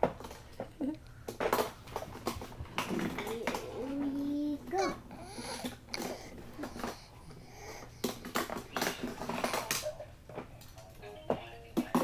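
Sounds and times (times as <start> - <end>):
baby snoring: 3.3 - 8.0.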